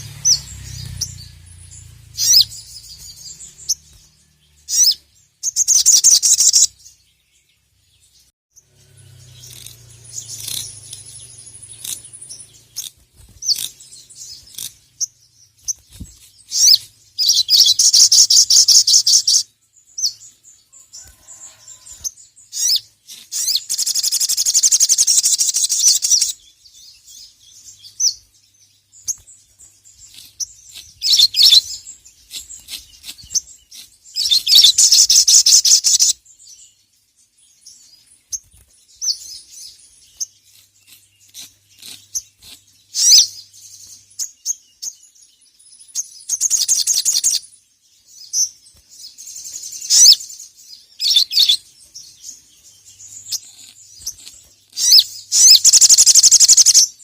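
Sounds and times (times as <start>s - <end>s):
bird rattling song: 0.0s - 7.2s, 8.6s - 36.7s, 37.4s - 47.6s, 48.2s - 57.0s
short sharp bird chirps: 8.6s - 28.3s, 37.8s - 45.1s, 48.2s - 52.4s, 53.0s - 57.0s.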